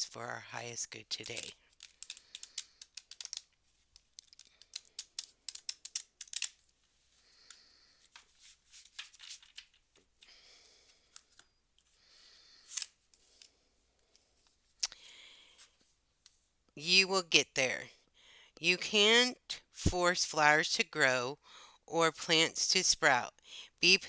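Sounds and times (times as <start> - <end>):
cards being shuffled: 1.2 - 12.0, 12.6 - 13.5
cards sliding and rustling: 1.3 - 10.3, 12.6 - 13.5.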